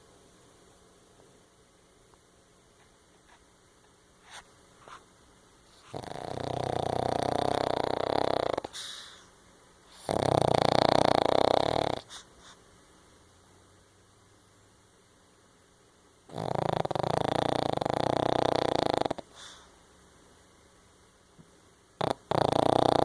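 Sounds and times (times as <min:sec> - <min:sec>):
dog snoring: 0:05.7 - 0:09.3, 0:09.9 - 0:12.6, 0:16.3 - 0:19.7, 0:22.0 - 0:23.0
dog breathing softly: 0:12.0 - 0:12.7, 0:19.2 - 0:19.8.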